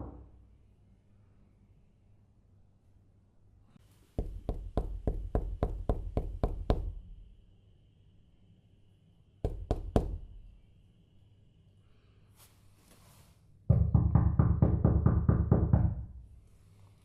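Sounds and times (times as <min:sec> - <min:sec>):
knuckles knocking on a door: 0:04.2 - 0:07.0, 0:09.5 - 0:10.3, 0:13.7 - 0:16.1.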